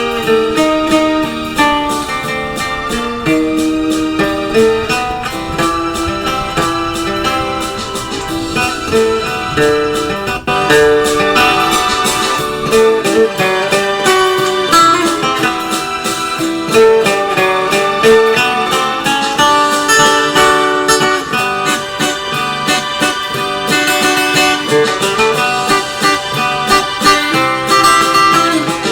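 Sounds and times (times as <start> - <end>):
plucked string instrument music: 0.0 - 28.9.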